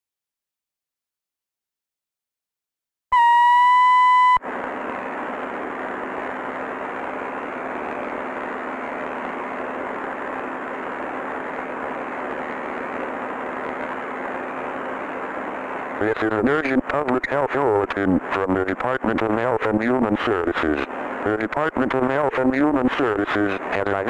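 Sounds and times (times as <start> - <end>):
electronic beep tone: 3.2 - 4.4
faint low hum: 4.0 - 24.0
static hiss: 4.5 - 24.0.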